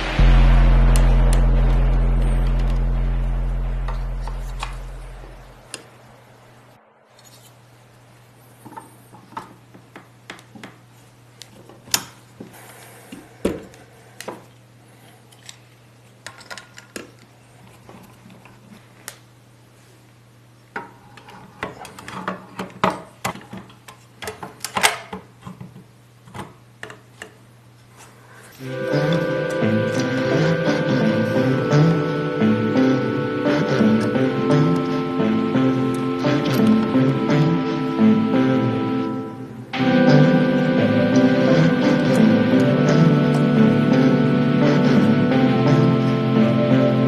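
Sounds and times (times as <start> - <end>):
steady low hum: 0.0 - 9.2, 28.0 - 47.0.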